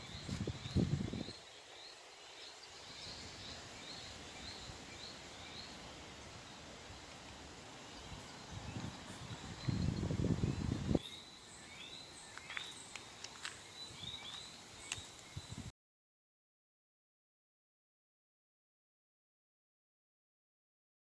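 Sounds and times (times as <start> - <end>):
wind gusting against microphone: 0.0 - 1.4, 2.8 - 11.0, 13.9 - 14.3, 15.2 - 15.7.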